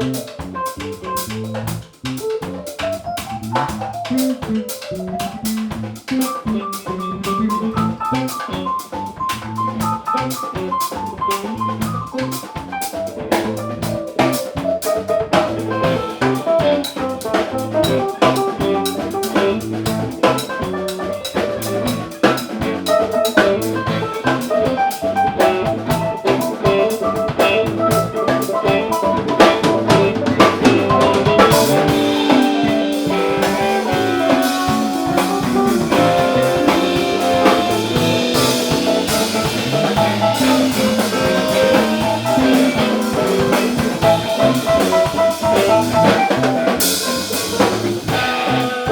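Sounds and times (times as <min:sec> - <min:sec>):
drum kit: 0:00.0 - 0:48.9
guitar: 0:00.0 - 0:48.9
cymbals: 0:31.3 - 0:48.9.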